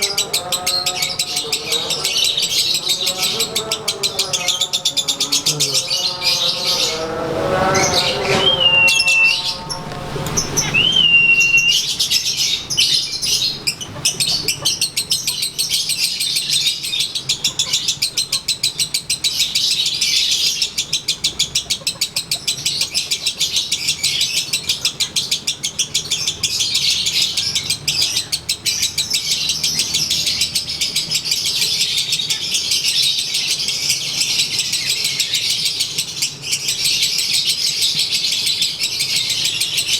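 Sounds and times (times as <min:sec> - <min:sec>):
lower-pitched bird call: 0:00.0 - 0:15.4
bird whistled notes: 0:07.7 - 0:12.4.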